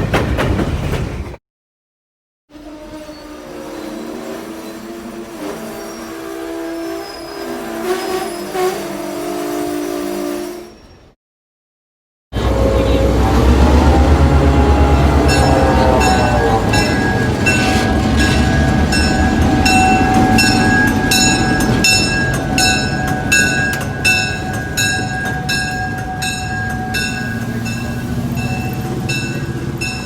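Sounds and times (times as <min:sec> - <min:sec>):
railroad cars rumbling: 0:00.0 - 0:01.4, 0:02.6 - 0:11.2, 0:12.4 - 0:30.0
steady high squeal: 0:02.5 - 0:11.2, 0:12.4 - 0:30.0
regular metallic ringing: 0:15.3 - 0:30.0.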